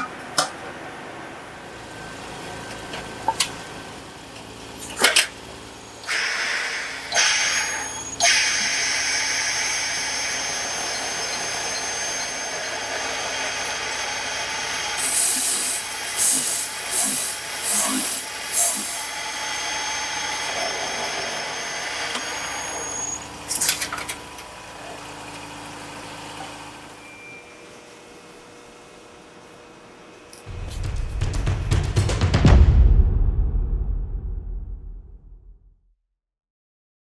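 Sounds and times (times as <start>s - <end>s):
machine hissing and whining: 5.4s - 23.6s
sharp knocks: 30.5s - 35.2s.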